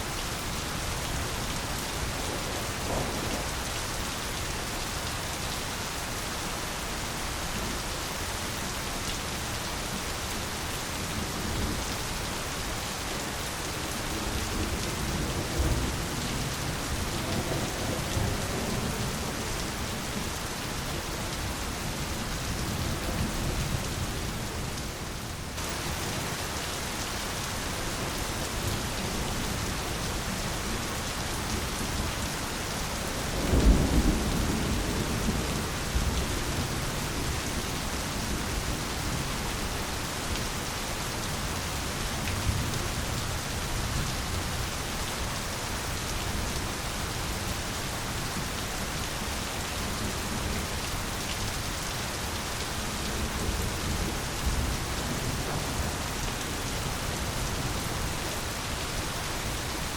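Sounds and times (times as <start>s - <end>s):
steady rain falling: 0.0s - 59.9s
low rumble of thunder: 1.1s - 4.0s, 33.1s - 39.2s.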